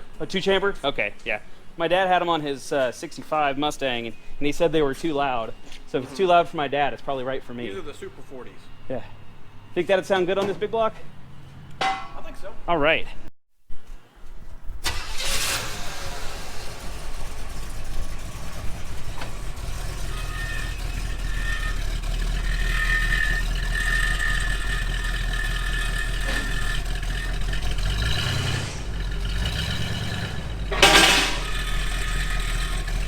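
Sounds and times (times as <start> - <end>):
car engine idling: 14.8 - 33.0.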